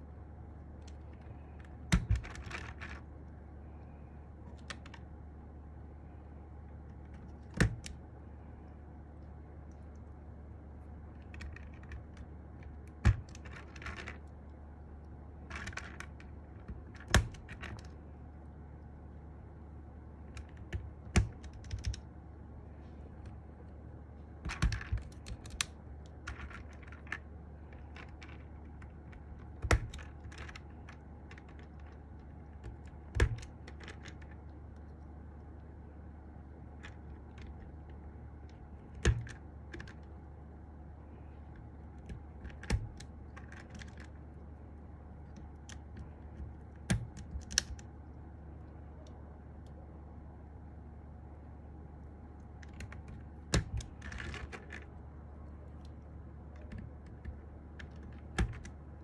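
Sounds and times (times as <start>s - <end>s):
mechanical keyboard keystrokes: 0.8s - 3.0s, 7.1s - 8.0s, 11.2s - 14.2s, 15.4s - 17.9s, 20.3s - 22.1s, 24.4s - 27.2s, 27.8s - 34.4s, 38.5s - 40.1s, 41.6s - 44.1s, 45.2s - 47.9s, 52.6s - 54.9s, 56.6s - 58.8s.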